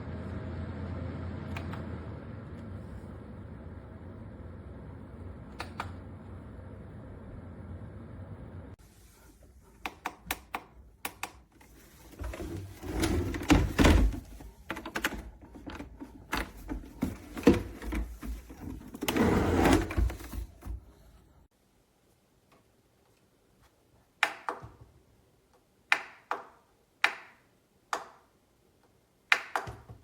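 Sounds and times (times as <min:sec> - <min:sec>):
fan-like hum: 0:00.0 - 0:10.7.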